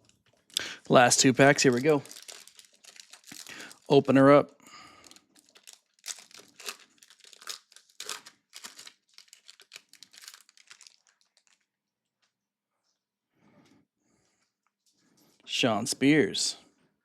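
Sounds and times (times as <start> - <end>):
wrapper crackling and tearing: 0.0 - 11.7.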